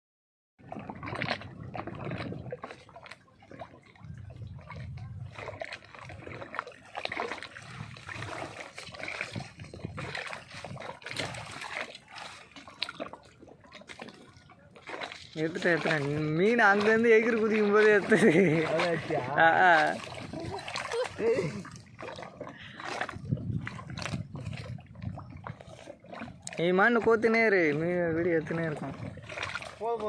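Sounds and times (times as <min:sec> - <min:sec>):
fish splashing in water: 0:00.6 - 0:30.0.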